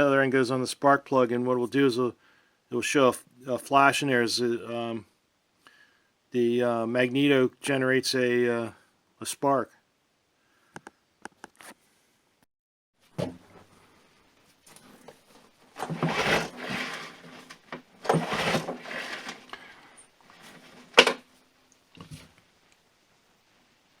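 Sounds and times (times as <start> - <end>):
recoil starter pull whir: 15.8 - 19.7.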